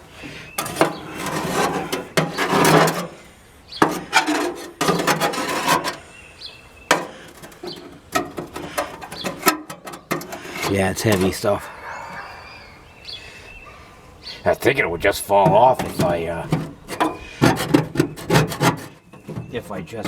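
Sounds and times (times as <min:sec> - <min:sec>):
tool scraping metal pan: 0:00.5 - 0:06.1, 0:06.9 - 0:11.5, 0:15.2 - 0:20.0.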